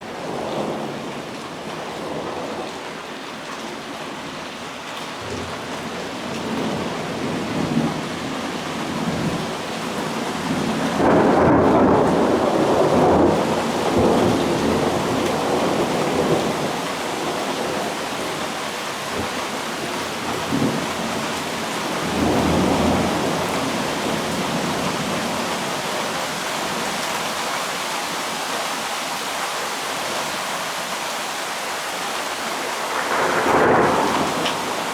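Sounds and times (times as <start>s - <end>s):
heavy rain: 0.0s - 34.9s
thunder rumbling: 5.2s - 26.0s, 32.8s - 34.9s.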